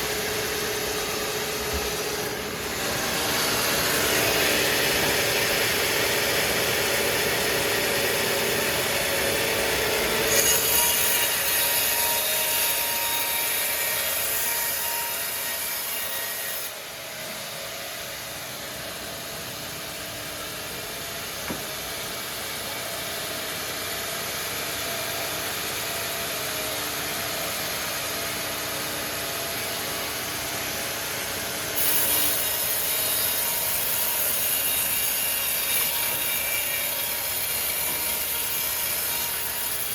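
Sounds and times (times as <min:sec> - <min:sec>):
saw cutting through timber: 0:00.0 - 0:16.9, 0:30.5 - 0:39.9.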